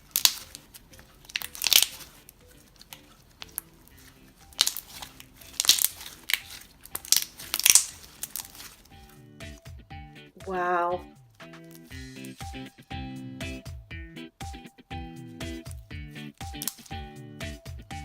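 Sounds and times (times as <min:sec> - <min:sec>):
slime crackling and popping: 0:00.0 - 0:09.2, 0:16.4 - 0:17.0
faint background music: 0:00.0 - 0:18.0.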